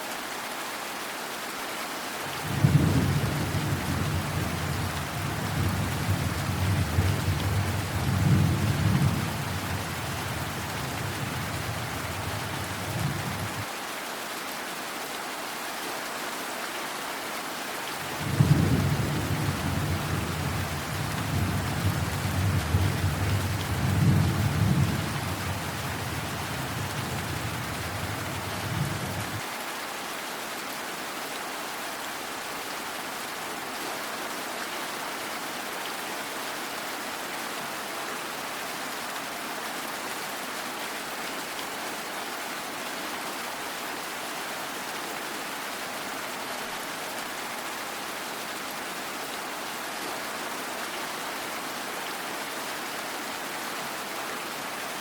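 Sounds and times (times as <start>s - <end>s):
steady rain: 0.0s - 55.0s
low rumble of thunder: 18.2s - 29.4s.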